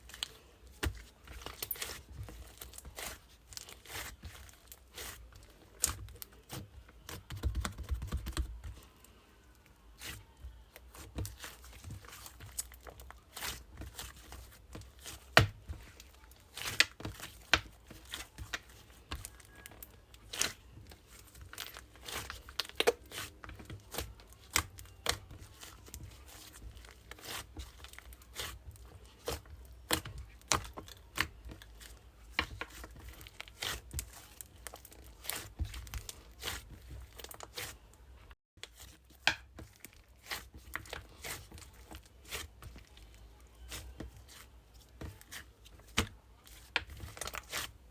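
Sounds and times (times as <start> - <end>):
pastry crunching: 0.0 - 47.9.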